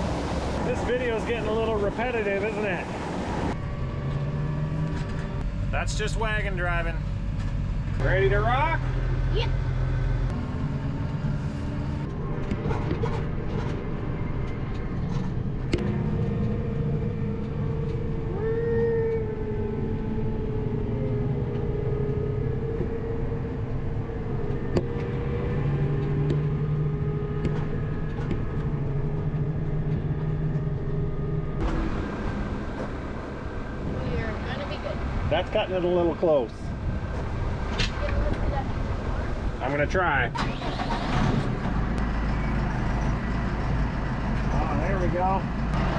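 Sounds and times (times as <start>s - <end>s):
tractor engine running: 0.0s - 45.9s
machine whine: 3.5s - 34.8s.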